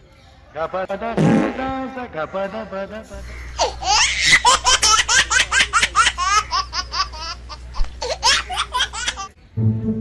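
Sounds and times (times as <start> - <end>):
hearty laughter: 3.5 - 9.3.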